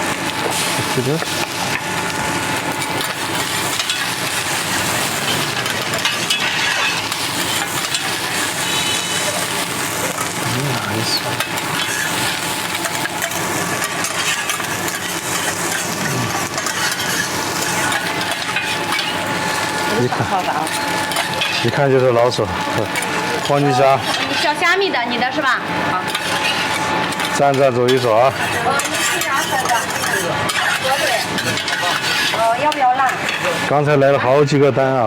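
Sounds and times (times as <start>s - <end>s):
food sizzling: 0.0s - 35.0s
spatula scraping on iron plate: 4.7s - 9.4s, 11.4s - 19.3s, 20.7s - 21.8s, 22.9s - 24.6s, 26.1s - 33.7s.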